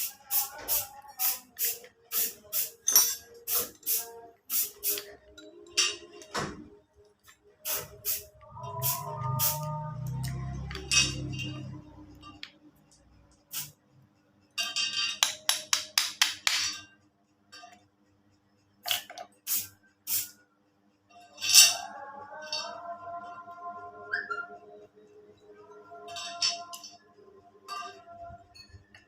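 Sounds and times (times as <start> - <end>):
sharp metallic clinks and taps: 2.5 - 3.6.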